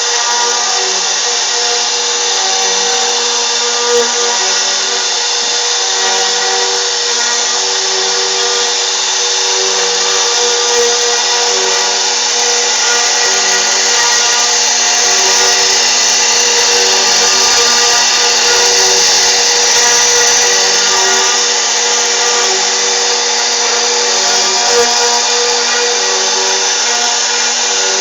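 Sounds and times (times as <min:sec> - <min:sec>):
router spindle whining: 0:00.0 - 0:28.0.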